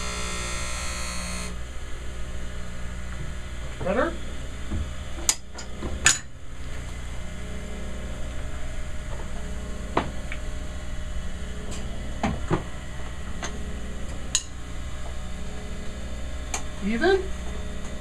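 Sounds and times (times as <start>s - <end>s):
sharpening machine humming: 0.0s - 1.6s.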